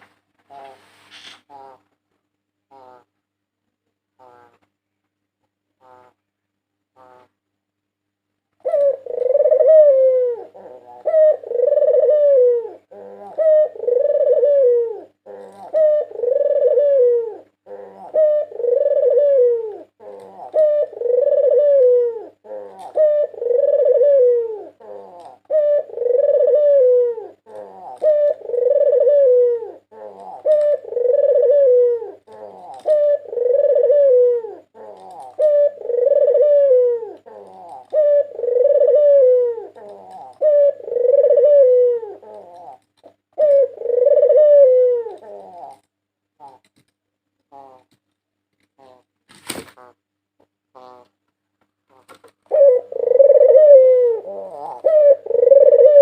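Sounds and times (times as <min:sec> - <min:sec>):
faint steady hum: 0:00.0 - 0:56.0
dove cooing: 0:00.4 - 0:01.9, 0:08.6 - 0:46.8, 0:47.5 - 0:48.0, 0:48.8 - 0:49.1, 0:49.7 - 0:51.2, 0:51.8 - 0:56.0.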